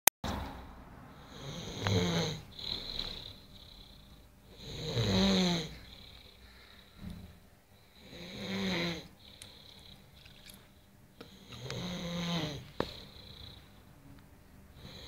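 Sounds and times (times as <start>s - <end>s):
man snoring: 1.2s - 6.9s, 8.0s - 10.0s, 11.2s - 13.6s, 14.7s - 15.0s
soft breathing: 5.6s - 8.1s, 9.0s - 11.8s, 12.6s - 14.0s.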